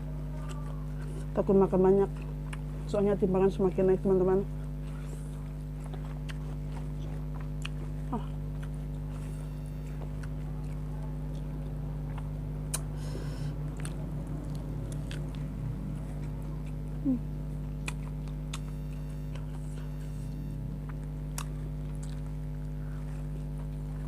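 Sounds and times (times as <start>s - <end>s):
low electrical hum: 0.0s - 24.0s
person chewing food: 2.1s - 2.8s, 4.6s - 24.0s
wet mouth clicks: 12.2s - 12.9s, 17.8s - 18.7s.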